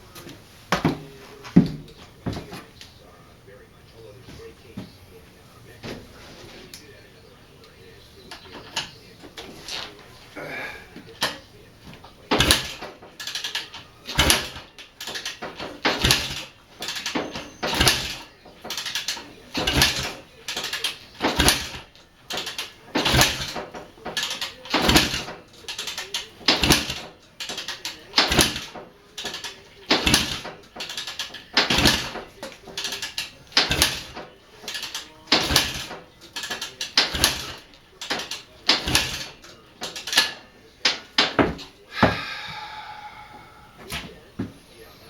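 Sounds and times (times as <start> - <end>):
small engine being hand-cranked: 11.2 - 41.7.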